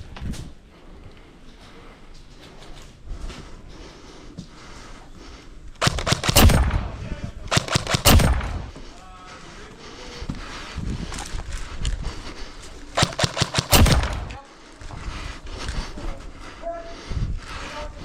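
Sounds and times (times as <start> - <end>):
airsoft rifle bursts: 5.8 - 8.8, 13.0 - 14.5.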